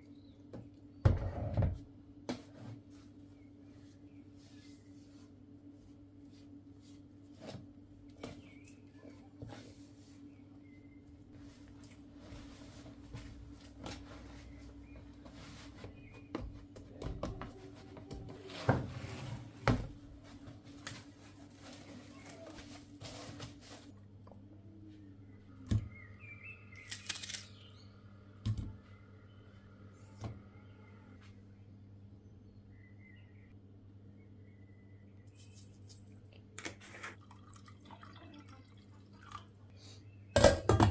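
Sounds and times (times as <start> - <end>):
low steady hum: 0.0 - 40.9
kitchen knocks and clicks: 40.4 - 40.9.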